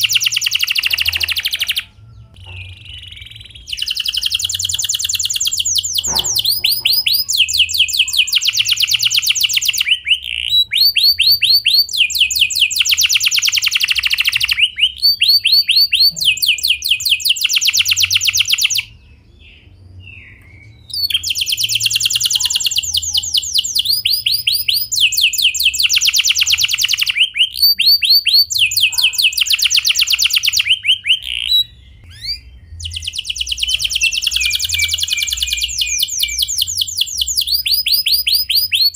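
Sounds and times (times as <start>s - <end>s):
canary singing trills: 0.0s - 38.9s.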